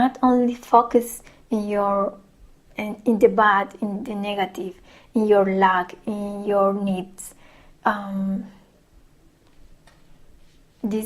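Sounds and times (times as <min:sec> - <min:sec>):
woman speaking: 0:00.0 - 0:02.2, 0:02.8 - 0:08.6.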